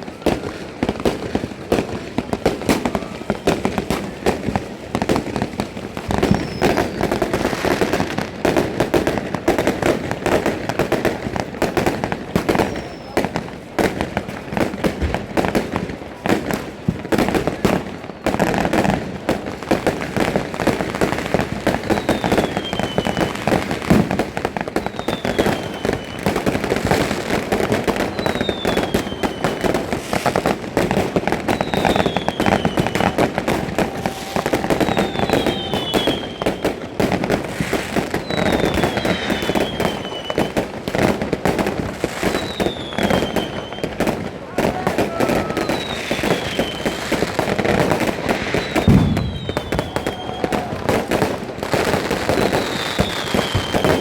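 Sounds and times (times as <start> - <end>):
fireworks crackling and banging: 0.0 - 54.0
firework whistles falling in pitch: 6.0 - 8.0, 12.4 - 13.3, 21.6 - 23.8, 24.7 - 27.1, 28.0 - 30.4, 31.4 - 37.2, 38.0 - 40.6, 42.2 - 47.3, 48.0 - 54.0.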